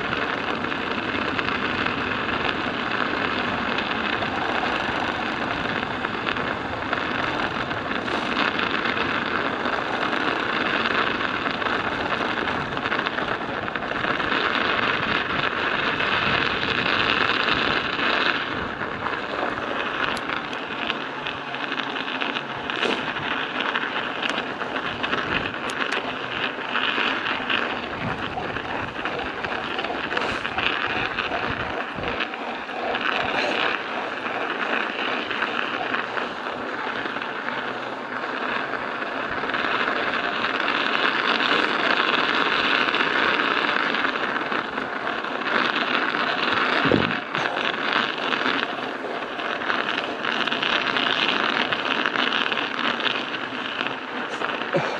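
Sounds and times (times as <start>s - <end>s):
studded tyres rasping on ice: 0.0s - 54.9s.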